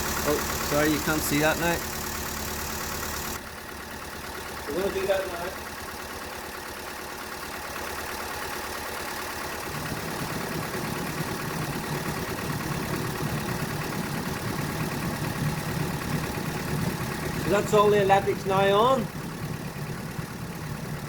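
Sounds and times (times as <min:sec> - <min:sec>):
car engine idling: 0:00.0 - 0:21.0
low pulsing hum: 0:09.6 - 0:21.0.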